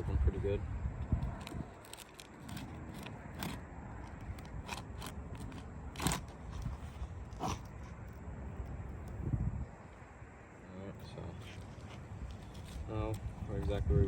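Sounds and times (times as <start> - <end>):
shingles cracking and scraping: 1.2 - 7.8.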